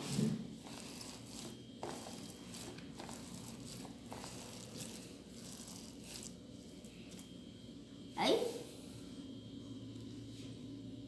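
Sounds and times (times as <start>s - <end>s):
crackling of squeezed foam dough: 0.0s - 7.4s.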